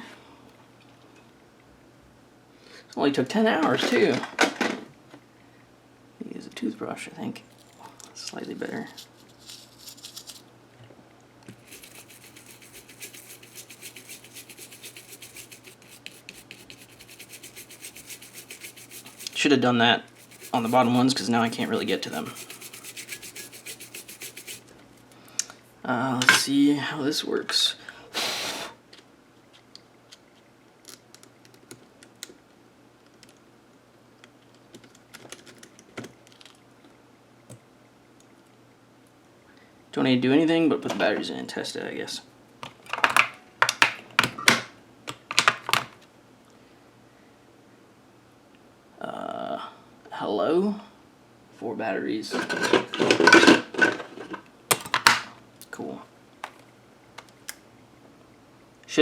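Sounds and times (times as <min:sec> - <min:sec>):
toothbrush scrubbing circuit board: 0:11.6 - 0:24.6.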